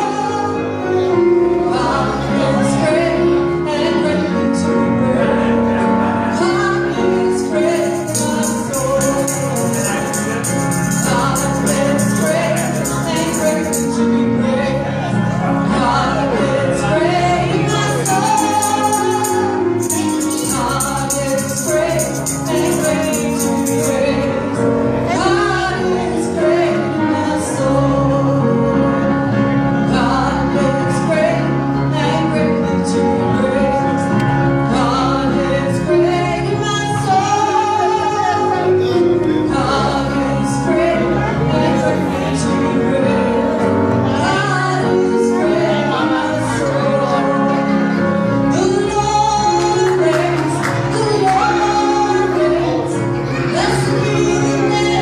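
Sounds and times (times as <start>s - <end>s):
woman singing: 0.0s - 29.1s, 29.8s - 55.0s
choir singing: 0.0s - 55.0s
band accompaniment: 7.4s - 14.4s, 17.0s - 26.7s.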